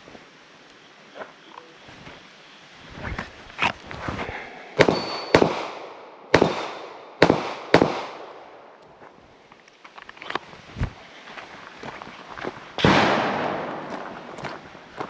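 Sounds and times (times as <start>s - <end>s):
steel target ringing: 4.8s - 5.4s
gunshots with echo: 4.8s - 8.3s, 12.8s - 14.2s.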